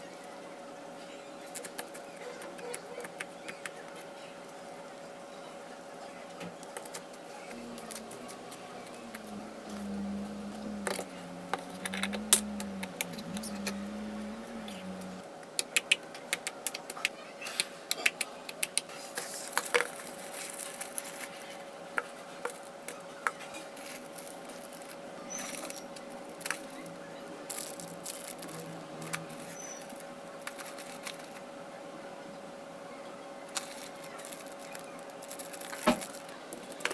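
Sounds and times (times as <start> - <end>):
faint steady hum: 7.1 - 15.4.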